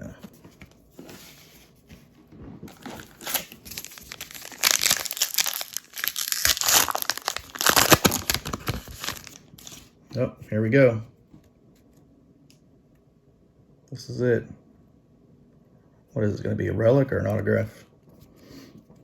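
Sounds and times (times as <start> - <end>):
wrapper crinkling and tearing: 2.7 - 9.9.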